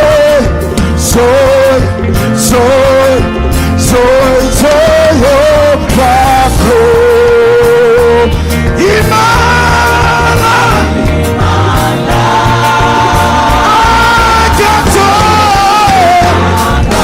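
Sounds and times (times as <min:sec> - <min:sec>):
gospel band accompaniment: 0:00.0 - 0:17.0.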